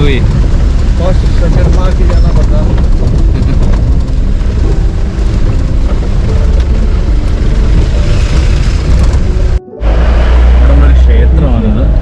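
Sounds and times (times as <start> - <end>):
vehicle body rattling and knocking: 0.0 - 9.6
jeep engine rumbling: 0.0 - 12.0.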